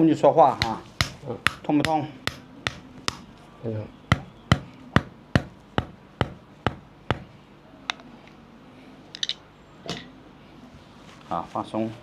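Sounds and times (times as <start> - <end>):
sharp taps on a body: 0.5 - 3.3.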